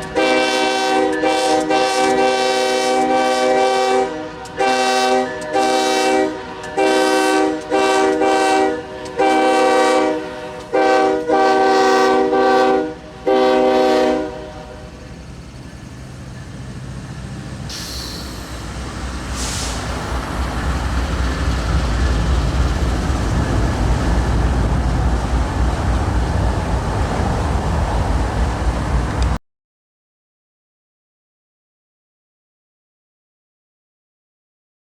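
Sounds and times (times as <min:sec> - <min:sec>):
locomotive air horn blasts: 0:00.0 - 0:15.0
passing train rumble: 0:00.0 - 0:29.4
brief high squeal: 0:17.7 - 0:18.7.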